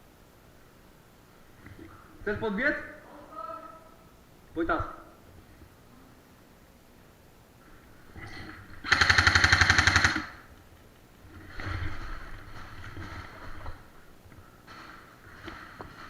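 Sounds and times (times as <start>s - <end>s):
airsoft gun full-auto burst: 8.8s - 10.5s.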